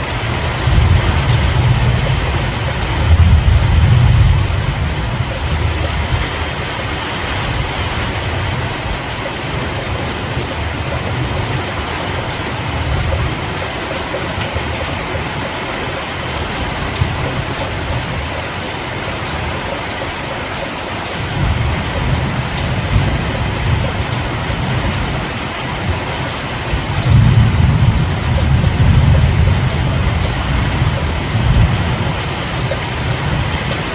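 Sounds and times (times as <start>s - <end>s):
steady rain falling: 0.0s - 33.9s.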